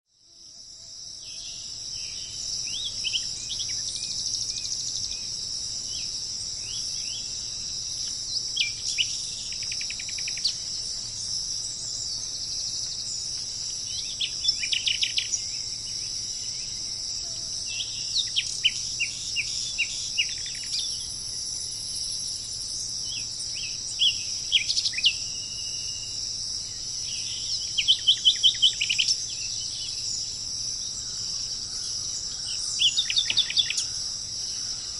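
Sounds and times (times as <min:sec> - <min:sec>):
high-pitched insect chorus: 0:00.1 - 0:34.9
small birds chirping: 0:01.1 - 0:34.9.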